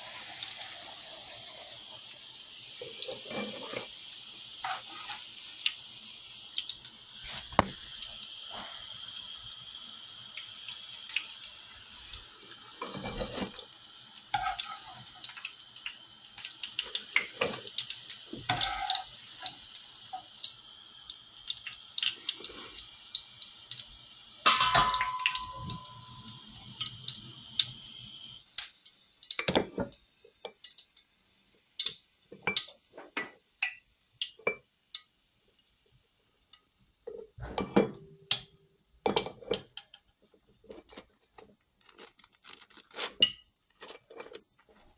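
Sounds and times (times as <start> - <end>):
dishes and utensils clinking: 2.8 - 3.9, 12.8 - 13.6, 14.3 - 15.1, 17.1 - 17.8, 18.4 - 19.1, 24.4 - 26.4, 29.4 - 29.9, 37.4 - 40.0
tap running into a sink: 7.2 - 8.2.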